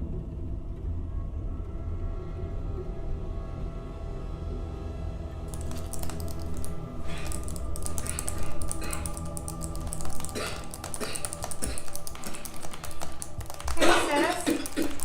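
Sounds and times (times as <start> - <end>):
soft background music: 0.0 - 15.0
computer keyboard typing: 5.5 - 15.0.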